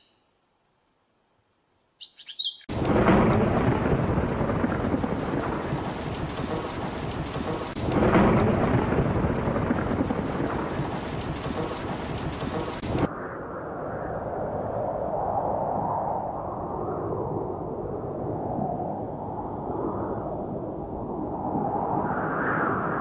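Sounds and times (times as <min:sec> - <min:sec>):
bird chirps: 0:00.0 - 0:00.3, 0:02.0 - 0:02.7
thunder rumbles: 0:02.6 - 0:13.3
heavy rain: 0:02.7 - 0:13.1.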